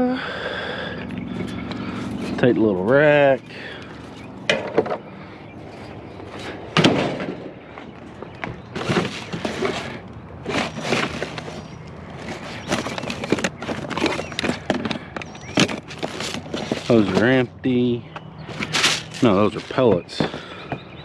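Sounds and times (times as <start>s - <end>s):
scrap metal clanking: 18.5s - 20.5s.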